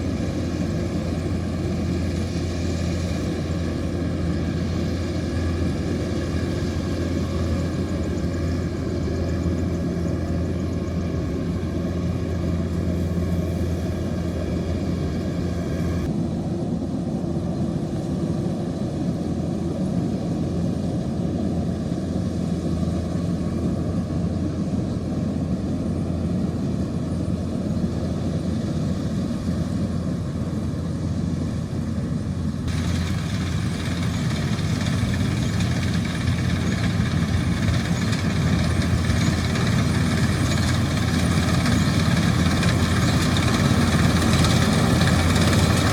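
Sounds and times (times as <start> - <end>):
diesel engine running: 0.0 - 16.1, 29.6 - 45.9.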